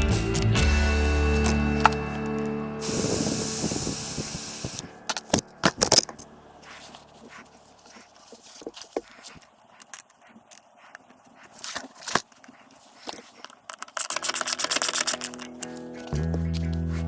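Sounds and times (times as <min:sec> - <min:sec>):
spray hissing: 0:02.0 - 0:05.0.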